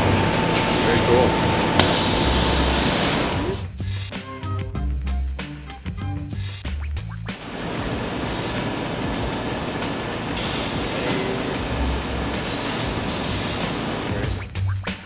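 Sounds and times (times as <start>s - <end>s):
factory machinery din: 0.0s - 3.7s, 7.4s - 14.4s.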